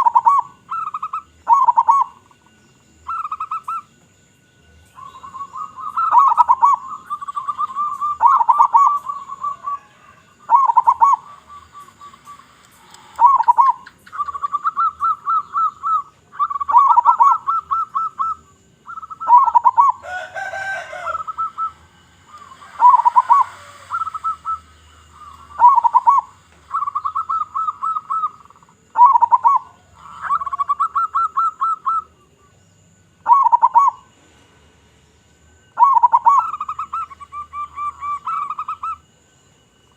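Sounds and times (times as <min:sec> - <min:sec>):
dove cooing: 0:00.0 - 0:03.9, 0:05.0 - 0:32.2, 0:33.2 - 0:34.2, 0:35.8 - 0:39.1.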